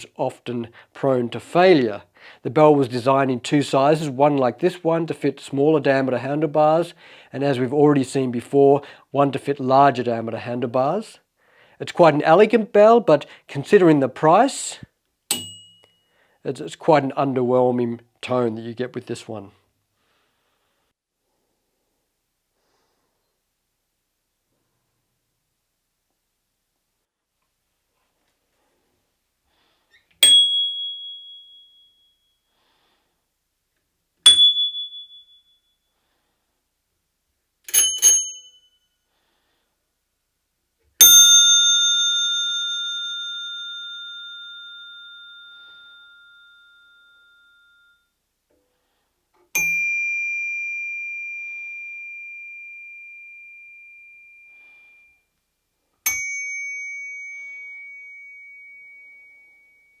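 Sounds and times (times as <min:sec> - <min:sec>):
bicycle bells ringing: 0:15.3 - 0:16.1, 0:30.2 - 0:32.4, 0:34.3 - 0:35.8, 0:37.7 - 0:38.9, 0:41.0 - 0:48.1, 0:49.6 - 0:55.2, 0:56.1 - 1:00.0.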